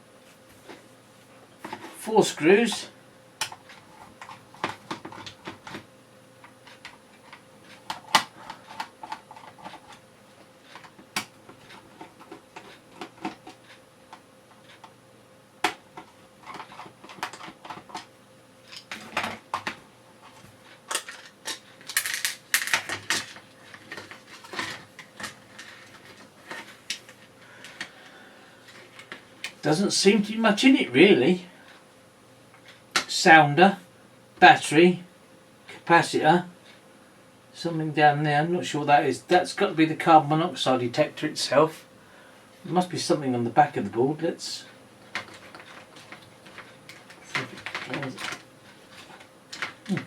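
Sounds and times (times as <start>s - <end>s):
clicks and plastic rattles: 15.6s - 18.1s, 45.0s - 50.0s.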